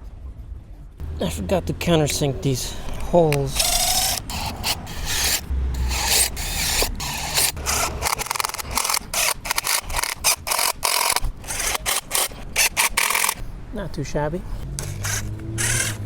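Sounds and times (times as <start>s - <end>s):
drill cutting into wood: 3.6s - 13.4s, 14.8s - 16.0s.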